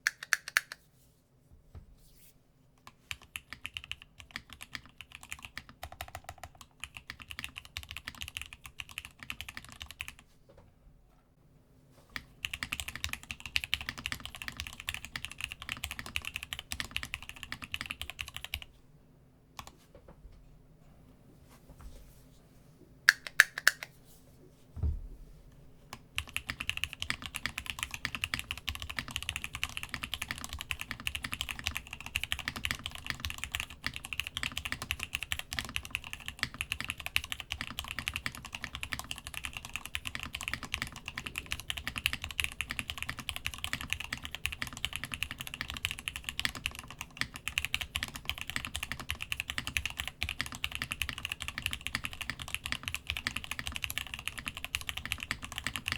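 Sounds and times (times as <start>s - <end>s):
typing on mechanical keyboard: 3.1s - 10.2s, 12.2s - 18.7s, 25.9s - 55.9s
low thud: 24.8s - 25.2s.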